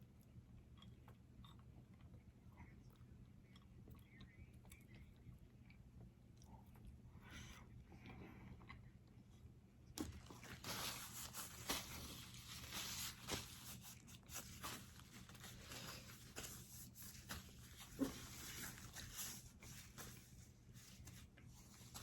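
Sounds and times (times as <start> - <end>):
food packaging crinkling: 10.0 - 22.0.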